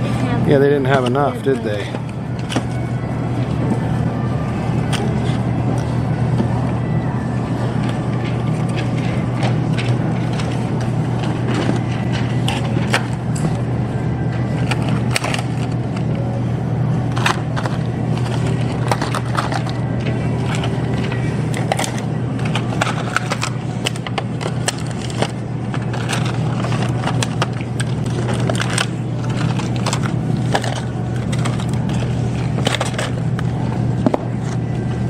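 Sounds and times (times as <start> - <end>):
shopping cart wheels rumbling: 0.0 - 35.0.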